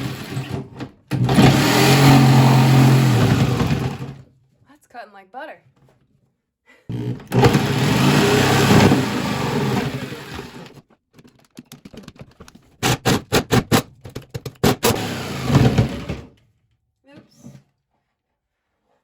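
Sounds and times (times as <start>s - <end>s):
power drill running under load: 0.0s - 0.6s, 1.2s - 4.2s, 6.9s - 10.8s, 14.6s - 16.3s.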